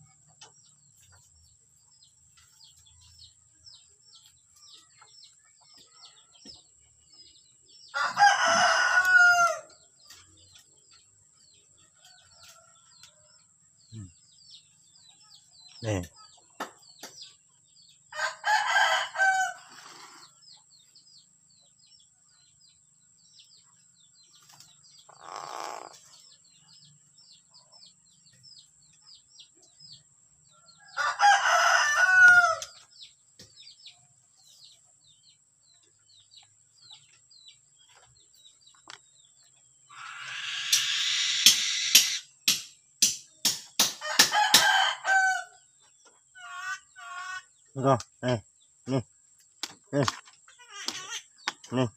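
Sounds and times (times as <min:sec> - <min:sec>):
loud drawn-out bird calls: 0:25.0 - 0:26.2, 0:39.9 - 0:42.5, 0:46.3 - 0:49.1, 0:50.0 - 0:51.9
harsh noisy bird call: 0:39.9 - 0:42.4.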